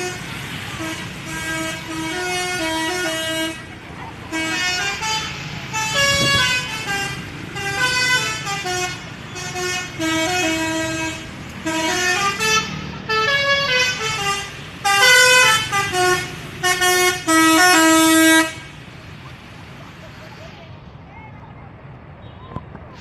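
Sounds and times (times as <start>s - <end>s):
musical air horns playing a tune: 0.0s - 3.7s, 4.3s - 18.7s.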